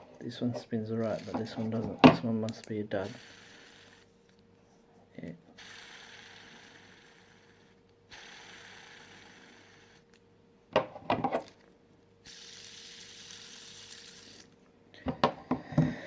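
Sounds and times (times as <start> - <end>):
fidget spinner whirring: 0.8 - 4.4, 5.5 - 10.2, 12.2 - 14.6
fidget spinner handling clicks: 2.4 - 3.2.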